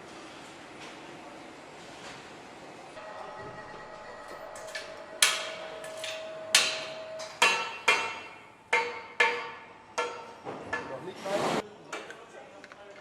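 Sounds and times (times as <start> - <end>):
steady machine tone: 3.0 - 7.5
metal clanking on metal: 4.6 - 11.0.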